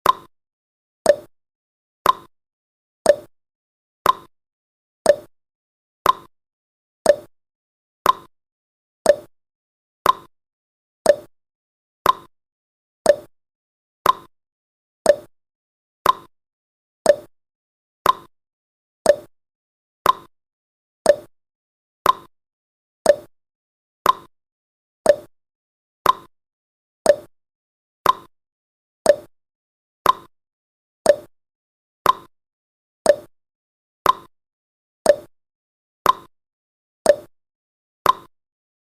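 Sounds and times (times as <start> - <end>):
clock ticking: 1.1 - 1.3, 3.1 - 3.3, 4.0 - 4.3, 5.1 - 5.3, 6.0 - 6.3, 7.1 - 7.3, 8.0 - 8.3, 9.1 - 9.3, 10.0 - 10.3, 11.1 - 11.3, 12.0 - 12.3, 13.1 - 13.3, 14.0 - 14.3, 15.1 - 15.3, 16.0 - 16.3, 17.1 - 17.3, 18.0 - 18.3, 19.1 - 19.3, 20.0 - 20.3, 21.1 - 21.3, 22.0 - 22.3, 23.1 - 23.3, 24.0 - 24.3, 25.1 - 25.3, 26.1 - 26.3, 27.1 - 27.3, 28.1 - 28.3, 29.1 - 29.3, 30.1 - 30.3, 31.1 - 31.3, 32.1 - 32.3, 33.1 - 33.3, 34.1 - 34.3, 35.1 - 35.3, 36.1 - 36.3, 37.1 - 37.3, 38.1 - 38.3.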